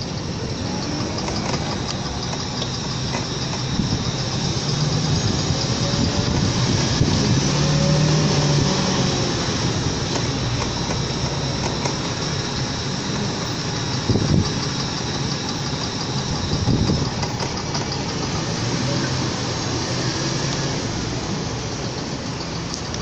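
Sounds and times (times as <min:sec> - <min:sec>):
vehicle engine running: 0:00.0 - 0:23.0.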